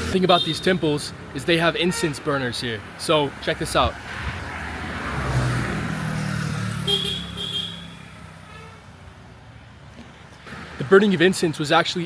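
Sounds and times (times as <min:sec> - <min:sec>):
road vehicle passing: 0:00.0 - 0:11.5.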